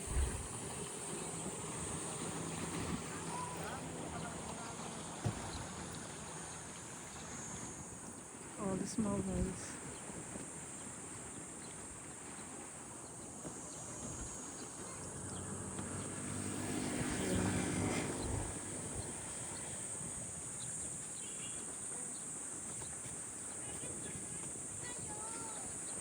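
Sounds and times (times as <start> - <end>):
motor vehicle passing by: 0.0 - 6.2, 14.9 - 20.3
insects buzzing: 0.0 - 26.0.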